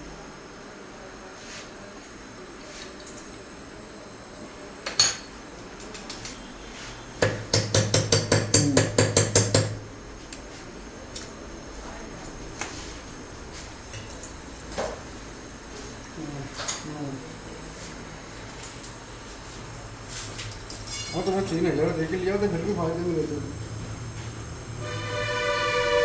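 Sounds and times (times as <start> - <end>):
hammer striking metal: 7.2 - 9.8.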